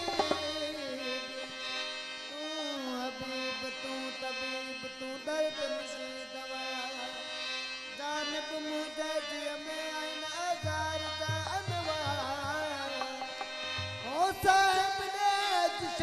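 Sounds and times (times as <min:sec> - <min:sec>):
instrumental music with sliding notes: 0:00.0 - 0:16.0.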